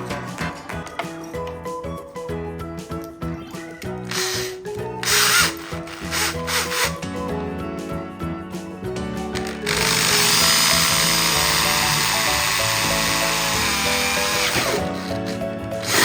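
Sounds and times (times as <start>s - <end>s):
background music with beat: 0.0s - 16.0s
power tool grinding: 4.1s - 7.0s, 9.4s - 16.0s.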